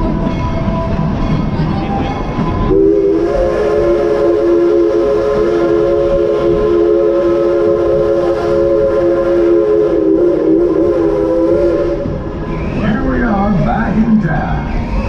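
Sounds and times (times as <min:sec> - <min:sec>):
steam locomotive chime whistle: 0:01.9 - 0:13.1.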